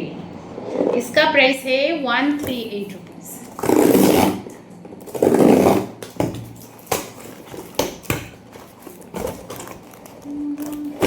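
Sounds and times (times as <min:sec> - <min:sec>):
packaging rustling: 0:05.0 - 0:11.0.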